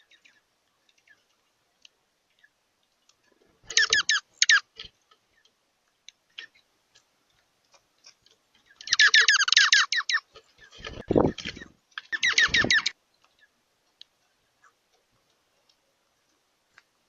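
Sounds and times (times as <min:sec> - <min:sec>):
faint clicks: 0:00.1 - 0:03.5, 0:04.6 - 0:09.1, 0:10.2 - 0:17.0
bird chattering calls: 0:03.6 - 0:04.7, 0:08.9 - 0:10.3, 0:10.9 - 0:13.0.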